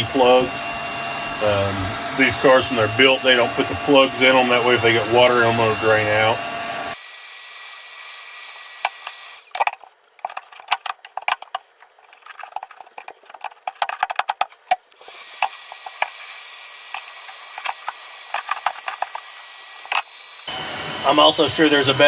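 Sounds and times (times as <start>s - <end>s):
heat gun blowing hiss: 0.0s - 9.5s, 14.9s - 22.0s.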